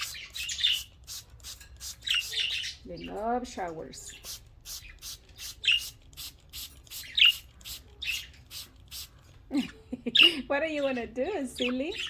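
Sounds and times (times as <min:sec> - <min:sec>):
spray bottle squirts: 0:00.0 - 0:02.5, 0:04.2 - 0:09.2.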